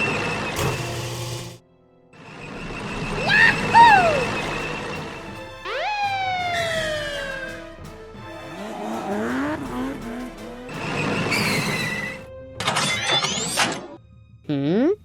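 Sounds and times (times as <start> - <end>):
background music: 0.6 - 15.0
cartoon engine tone: 3.1 - 4.7, 5.6 - 7.6.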